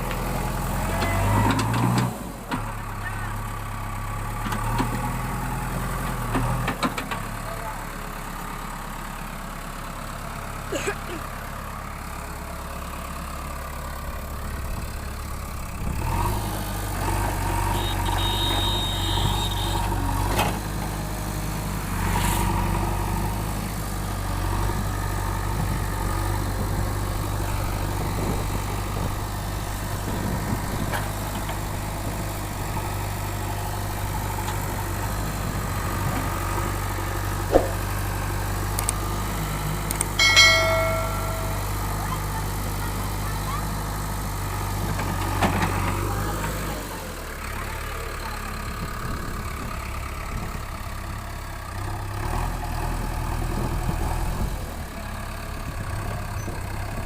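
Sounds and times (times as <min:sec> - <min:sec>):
diesel engine running: 0:00.0 - 0:57.0.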